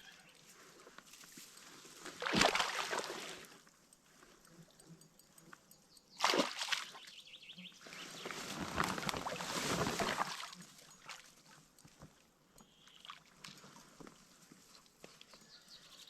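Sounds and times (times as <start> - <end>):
oars splashing in water: 2.1 - 3.6, 6.2 - 7.0, 8.9 - 11.4.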